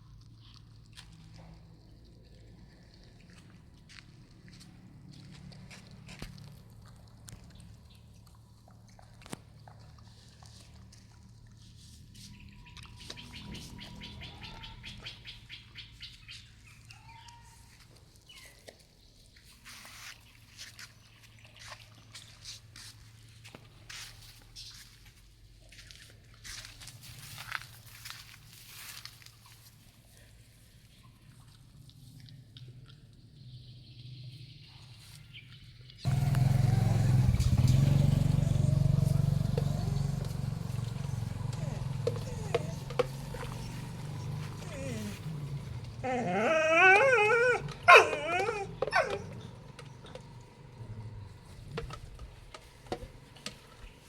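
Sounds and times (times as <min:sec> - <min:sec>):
animals chewing wetly: 0:00.0 - 0:33.6, 0:35.5 - 0:54.0
engine running steadily: 0:36.1 - 0:46.1.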